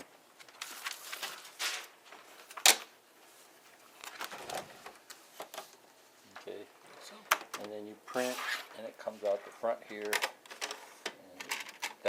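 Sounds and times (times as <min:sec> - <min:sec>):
paper and plastic rustling: 0:00.0 - 0:12.0
plastic printer parts clicking: 0:09.8 - 0:12.0.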